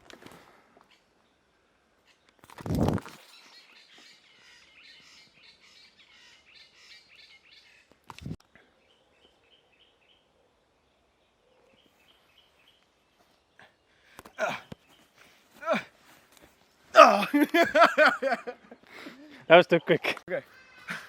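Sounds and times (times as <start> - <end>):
birds chirping and singing: 3.1 - 8.0, 8.6 - 15.5, 18.4 - 21.0.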